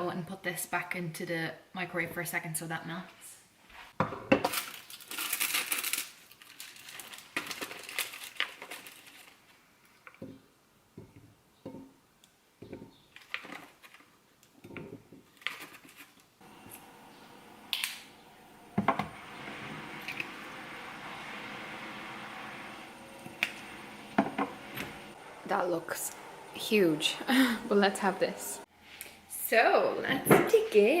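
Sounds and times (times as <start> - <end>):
packaging crinkling: 4.5 - 9.6
microwave oven humming: 16.4 - 28.7.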